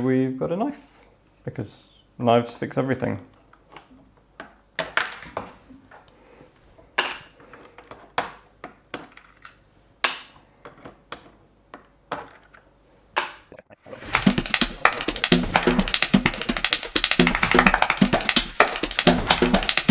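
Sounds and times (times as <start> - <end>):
keycaps clicking off keyboard: 14.0 - 19.9.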